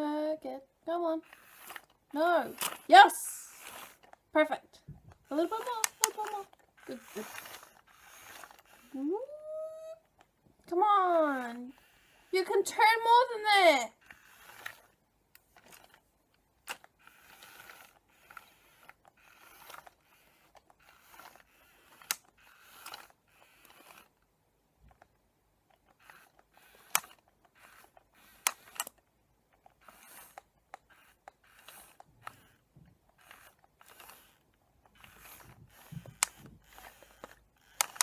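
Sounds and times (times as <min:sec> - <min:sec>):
toy motor whirring: 0:00.0 - 0:38.0
sharp clicks: 0:01.2 - 0:04.2, 0:05.0 - 0:09.0, 0:24.9 - 0:38.0.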